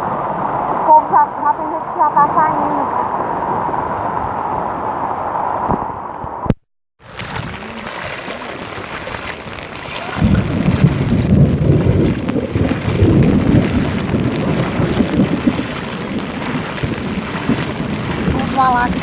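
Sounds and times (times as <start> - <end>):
heavy rain falling: 7.0 - 19.0
gusty wind buffeting microphone: 9.5 - 19.0.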